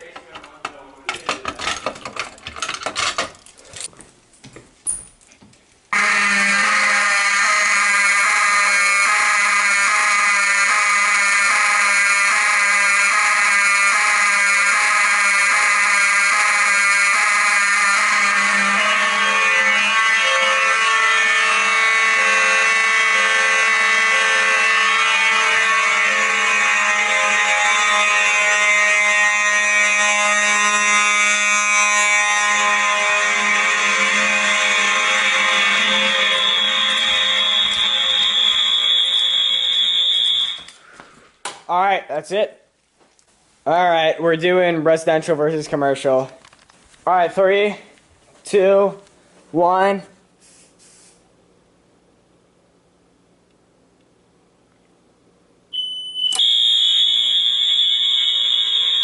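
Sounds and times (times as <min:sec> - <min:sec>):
fire alarm horns sounding: 0:05.9 - 0:40.9, 0:55.7 - 0:59.0.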